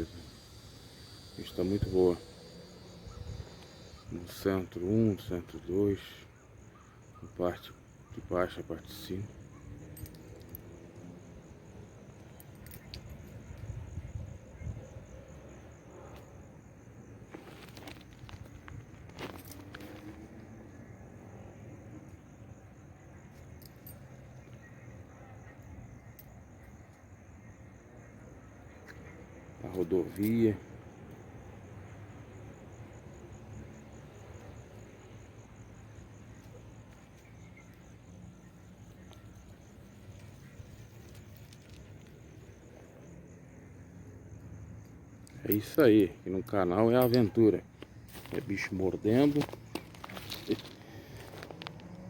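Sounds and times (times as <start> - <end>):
cricket chirping: 0.0 - 52.0
insect trilling: 0.0 - 52.0.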